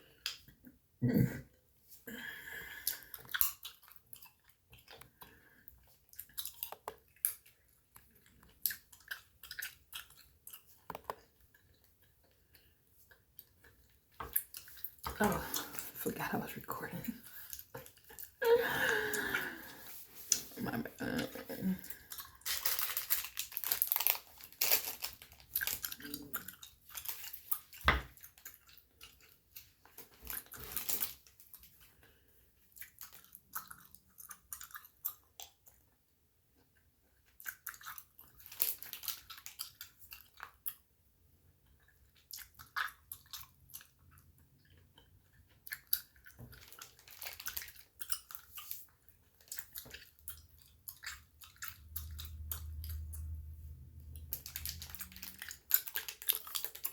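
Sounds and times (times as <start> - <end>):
gum chewing: 2.6 - 36.0, 36.6 - 40.9, 41.5 - 56.9.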